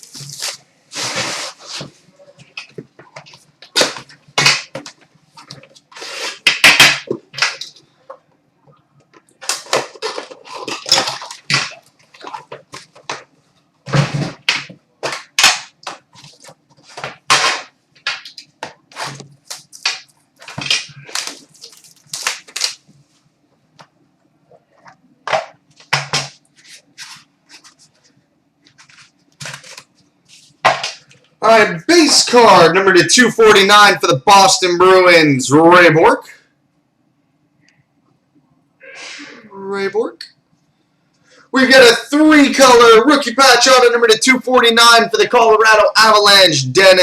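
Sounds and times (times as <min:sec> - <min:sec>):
plastic wrap crinkling and tearing: 0:00.0 - 0:01.8, 0:19.0 - 0:22.9.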